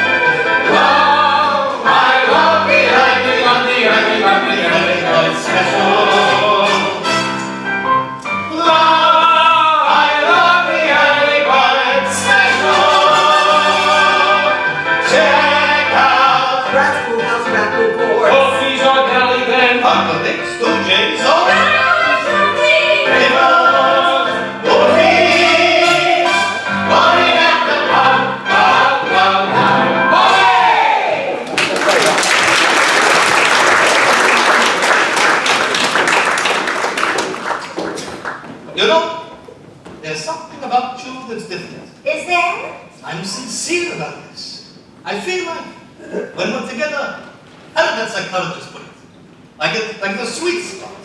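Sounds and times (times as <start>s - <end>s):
voices singing together: 0.0s - 7.2s, 8.5s - 31.5s
musical accompaniment: 0.0s - 37.3s.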